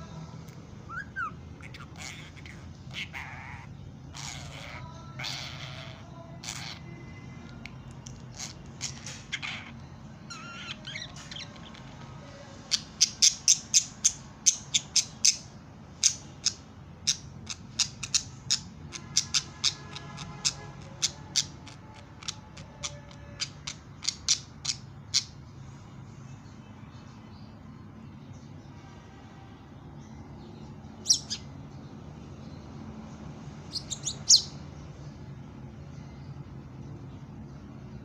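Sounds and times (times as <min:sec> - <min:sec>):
budgerigars chattering: 0:33.7 - 0:34.5.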